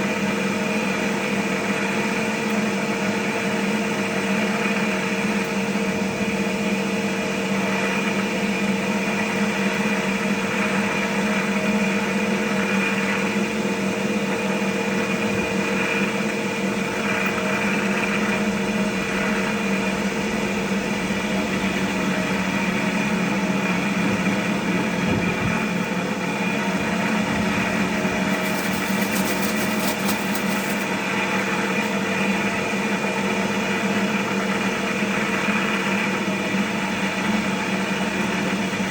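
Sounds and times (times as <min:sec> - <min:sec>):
cotton candy machine motor humming: 0:22.8 - 0:34.2.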